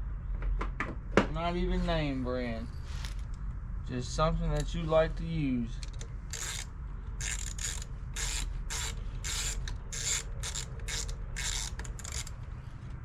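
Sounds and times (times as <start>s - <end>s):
ratchet wrench clicking: 5.8s - 12.4s.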